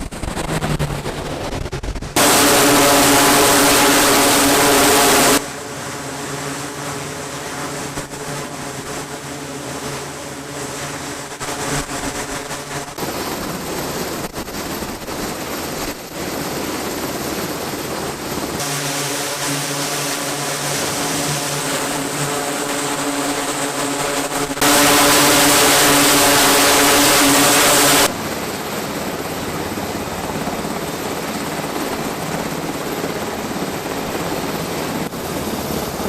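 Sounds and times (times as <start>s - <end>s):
loud rushing noise with drone: 0.0s - 17.0s, 17.8s - 36.0s
engine running with low hum: 18.6s - 28.3s.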